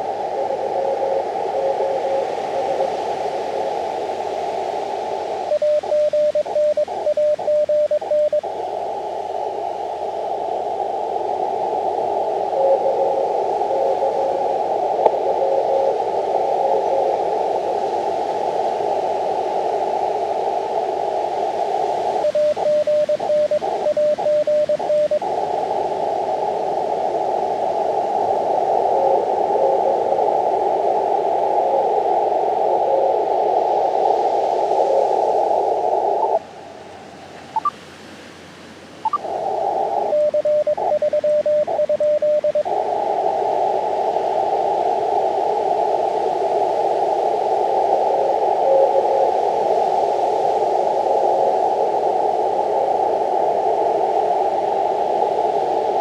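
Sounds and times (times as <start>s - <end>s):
radio receiver hiss: 0.0s - 56.0s
morse code tones: 5.5s - 8.4s, 22.2s - 25.2s, 40.1s - 42.7s.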